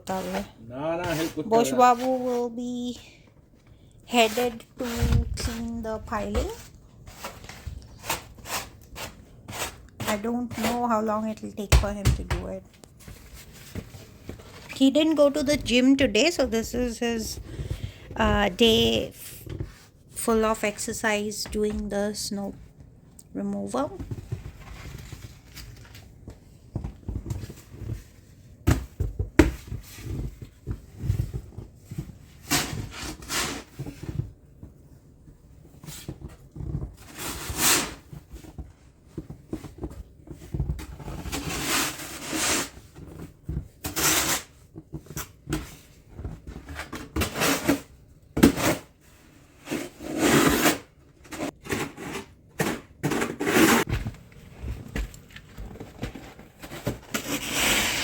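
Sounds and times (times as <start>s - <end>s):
snow shovel scraping snow: 1.0s - 2.4s, 57.2s - 58.0s.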